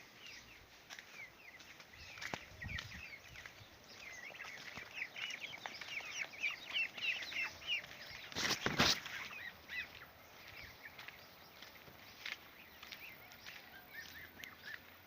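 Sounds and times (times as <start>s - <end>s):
chicks peeping: 0.1s - 15.0s
rustling noise: 8.0s - 9.4s.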